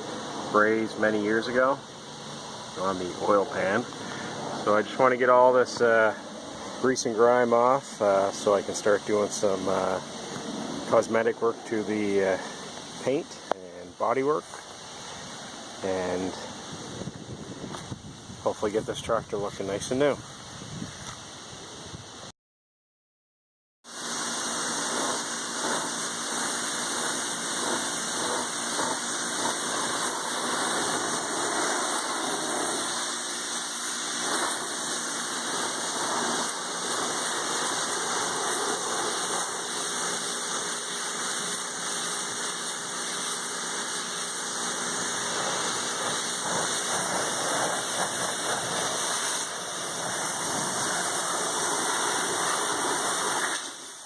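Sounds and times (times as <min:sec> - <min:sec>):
pressure washer motor droning: 0:00.0 - 0:17.8, 0:23.9 - 0:54.0
pressure washer water jet spraying: 0:00.0 - 0:18.0, 0:23.9 - 0:54.0.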